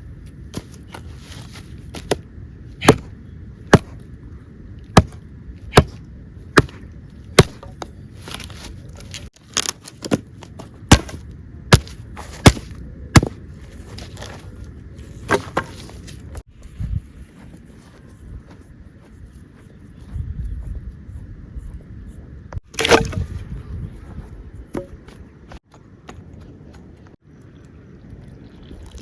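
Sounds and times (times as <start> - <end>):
firewood chopping strikes: 2.8 - 4.0, 5.0 - 6.0, 6.6 - 7.9, 10.9 - 13.4, 22.7 - 23.3.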